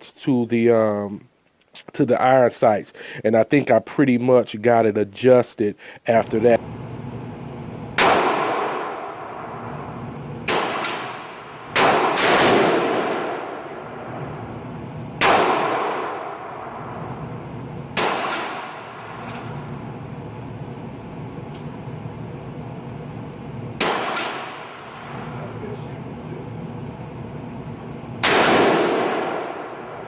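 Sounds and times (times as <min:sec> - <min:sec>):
rifle shots echoing: 0:08.0 - 0:09.6, 0:10.4 - 0:14.3, 0:15.2 - 0:17.1, 0:17.9 - 0:19.6, 0:23.8 - 0:25.4, 0:28.2 - 0:30.0.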